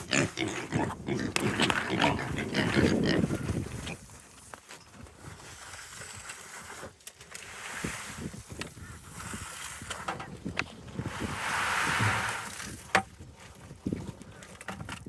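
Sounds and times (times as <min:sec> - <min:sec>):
pigs grunting: 0:00.0 - 0:04.0.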